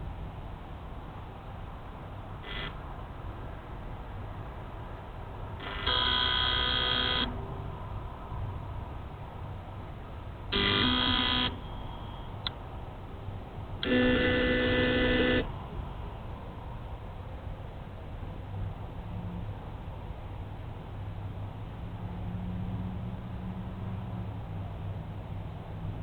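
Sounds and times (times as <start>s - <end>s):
steady buzzing tone: 2.3s - 4.0s, 5.2s - 16.3s.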